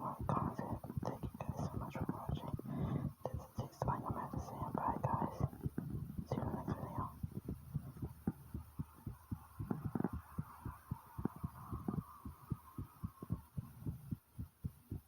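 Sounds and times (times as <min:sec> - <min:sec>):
fast pounding heartbeat: 0:00.0 - 0:15.0.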